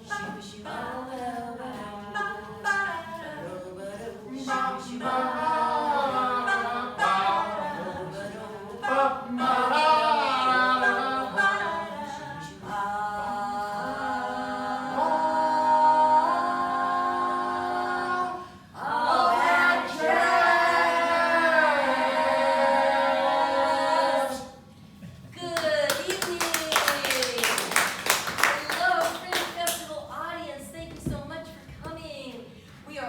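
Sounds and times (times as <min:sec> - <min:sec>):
group singing in harmony: 0:00.0 - 0:24.7.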